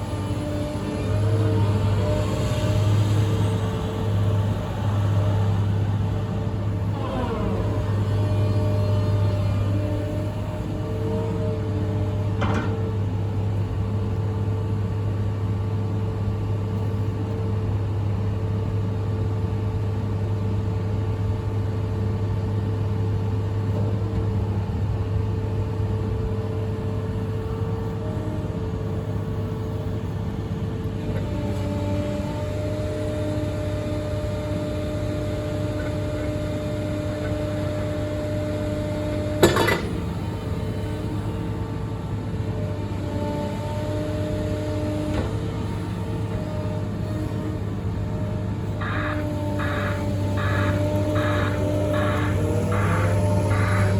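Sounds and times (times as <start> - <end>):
diesel engine droning: 43.6 - 53.9.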